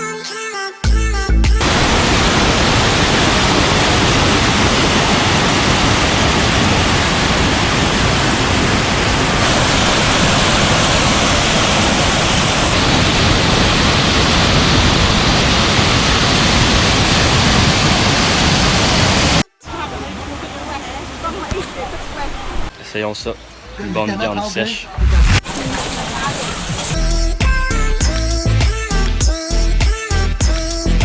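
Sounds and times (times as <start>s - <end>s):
waterfall rushing: 1.6s - 22.8s, 23.4s - 27.0s.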